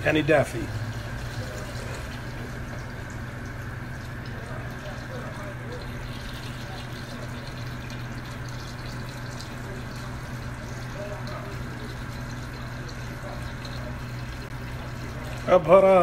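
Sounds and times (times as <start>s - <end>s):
water pouring into a pot: 0.0s - 16.0s.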